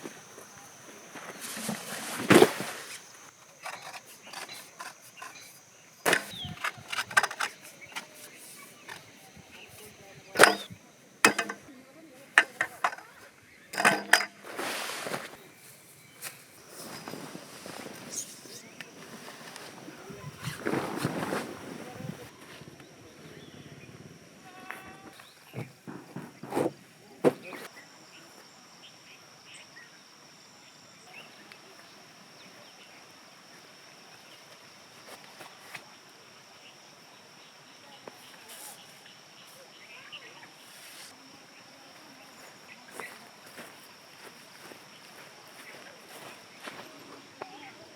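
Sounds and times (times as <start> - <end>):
crickets trilling: 0.0 - 47.9
sharp clicks and knocks: 6.1 - 8.1, 10.4 - 11.7, 12.4 - 13.1.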